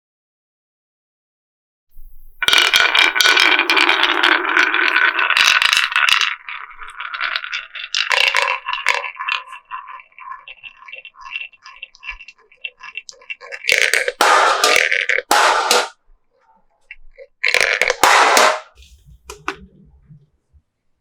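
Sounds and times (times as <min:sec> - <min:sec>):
marbles clattering down wooden run: 0:02.4 - 0:16.0, 0:17.4 - 0:18.8.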